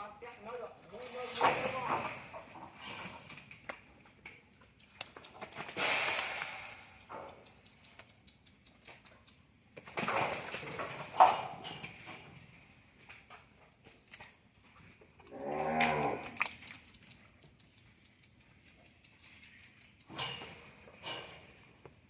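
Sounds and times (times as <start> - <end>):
cow mooing: 15.3 - 16.4.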